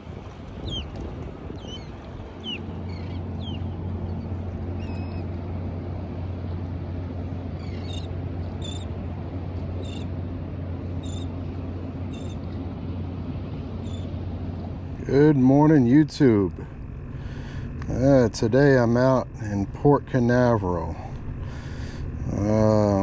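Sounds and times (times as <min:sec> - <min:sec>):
steady low hum: 0:00.0 - 0:23.0
birds chirping: 0:00.6 - 0:05.5, 0:07.2 - 0:12.6, 0:13.7 - 0:14.3
short high bird calls: 0:04.8 - 0:05.3, 0:09.8 - 0:10.1.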